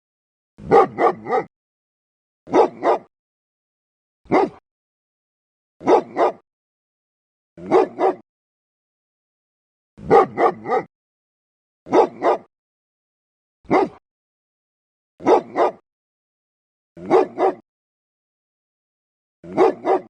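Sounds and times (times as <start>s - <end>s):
dog barking: 0.6s - 1.5s, 2.5s - 3.1s, 4.3s - 4.6s, 5.8s - 6.4s, 7.6s - 8.2s, 10.0s - 10.9s, 11.9s - 12.5s, 13.7s - 14.0s, 15.2s - 15.8s, 17.0s - 17.6s, 19.4s - 20.0s.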